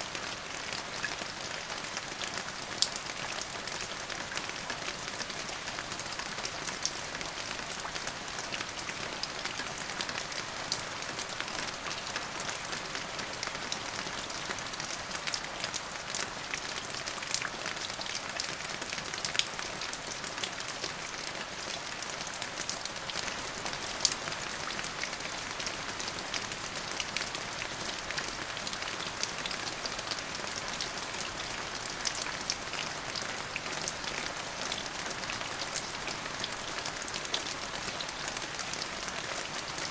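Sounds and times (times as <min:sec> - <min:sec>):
raindrops ticking on a surface: 0:00.1 - 0:39.9
steady rain hiss: 0:23.2 - 0:39.9.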